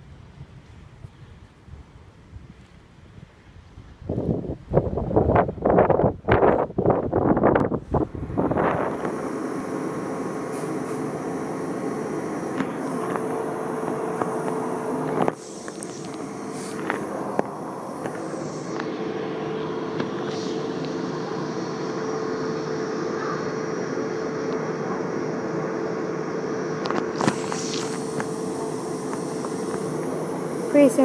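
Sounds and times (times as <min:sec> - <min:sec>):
electric train humming: 0:06.8 - 0:31.0
held mid-pitched tone: 0:08.3 - 0:31.0.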